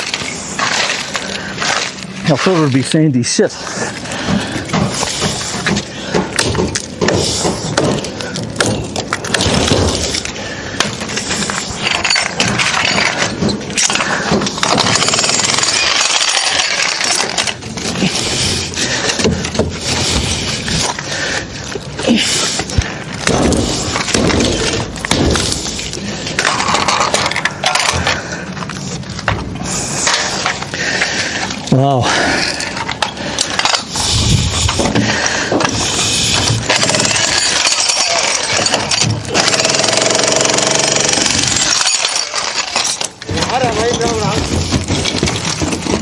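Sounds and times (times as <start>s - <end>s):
concrete being broken up: 3.8s - 21.1s, 22.6s - 29.4s, 34.7s - 46.0s.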